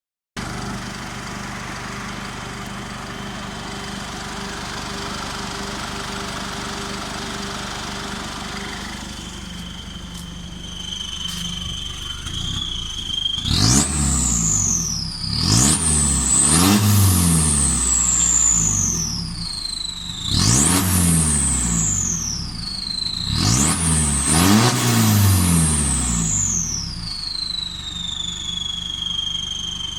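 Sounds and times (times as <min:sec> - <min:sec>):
car engine idling and revving: 0:00.4 - 0:29.9
turbo whistle: 0:06.8 - 0:29.9.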